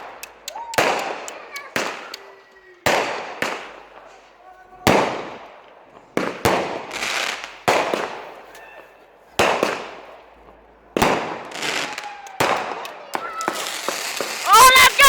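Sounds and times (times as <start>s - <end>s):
firework bangs: 0.0s - 15.0s.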